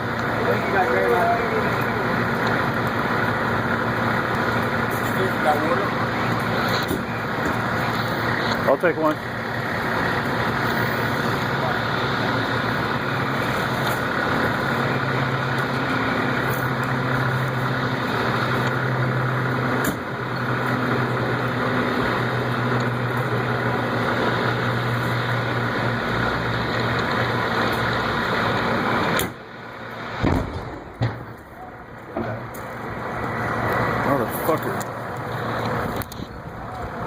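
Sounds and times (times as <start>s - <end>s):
engine humming: 0.0s - 37.0s
loud bang: 30.2s - 31.4s.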